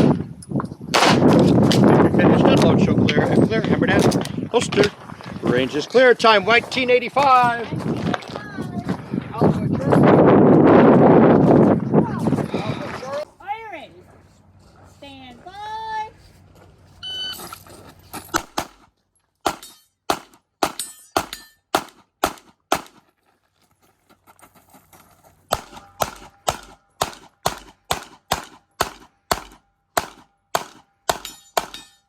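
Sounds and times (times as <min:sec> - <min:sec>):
handgun shots: 0:01.0 - 0:01.5, 0:18.3 - 0:23.0, 0:25.5 - 0:32.0.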